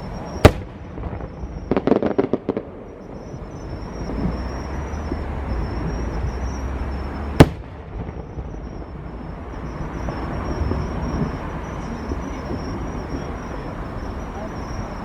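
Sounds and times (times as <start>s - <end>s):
distant firework bursts rumbling: 0.0s - 15.0s
loud firework bang: 0.4s - 4.4s, 7.2s - 9.0s.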